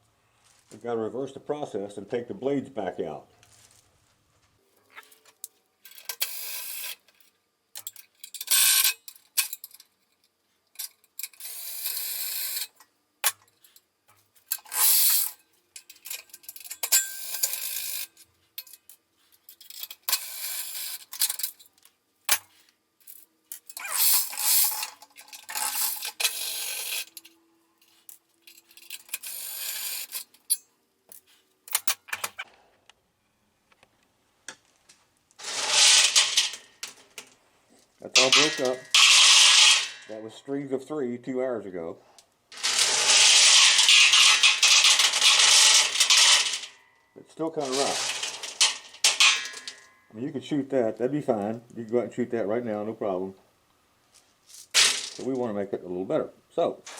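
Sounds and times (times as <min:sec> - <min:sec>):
metallic rattling and clinking: 0:35.4 - 0:37.3, 0:38.2 - 0:40.1, 0:42.5 - 0:46.8, 0:47.6 - 0:50.0.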